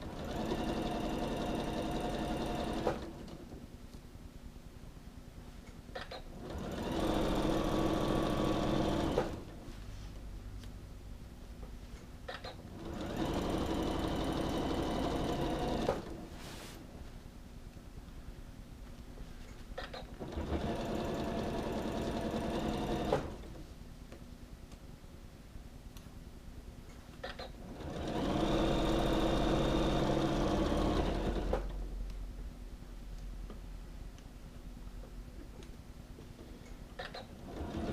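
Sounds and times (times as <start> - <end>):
sewing machine stitching: 0.0 - 3.4, 6.0 - 9.6, 12.3 - 16.2, 19.8 - 23.5, 27.2 - 31.8, 37.0 - 37.9.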